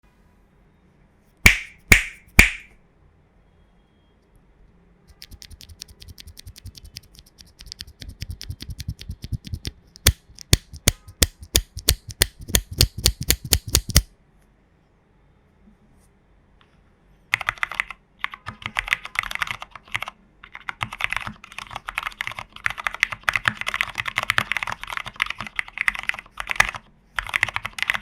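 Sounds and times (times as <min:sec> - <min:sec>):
sharp snaps: 0:01.4 - 0:02.7, 0:05.1 - 0:14.1
typing on mechanical keyboard: 0:05.1 - 0:14.1, 0:17.4 - 0:28.0.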